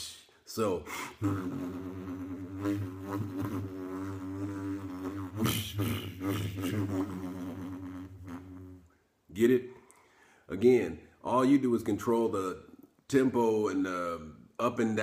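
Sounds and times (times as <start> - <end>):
man imitating lightsaber hum: 0.6 - 9.0.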